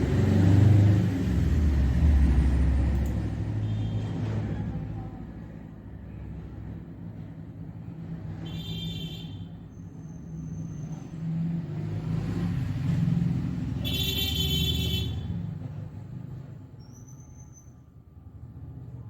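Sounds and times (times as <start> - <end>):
vehicle rumbling past: 0.0 - 5.0, 10.2 - 13.8.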